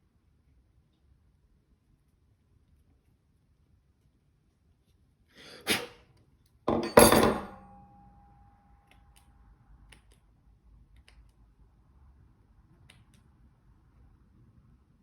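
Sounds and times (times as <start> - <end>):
metallic clank ringing: 6.7 - 8.4.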